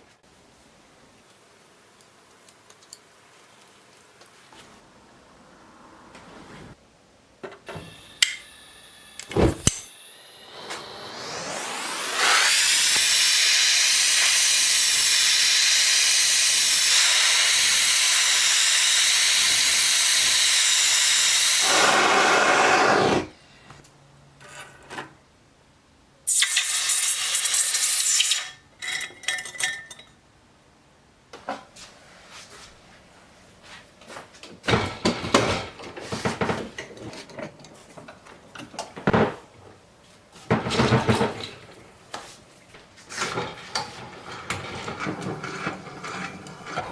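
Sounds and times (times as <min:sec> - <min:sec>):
gas torch hissing: 0:07.7 - 0:23.4, 0:26.3 - 0:28.6
metal tools clinking: 0:28.8 - 0:30.2.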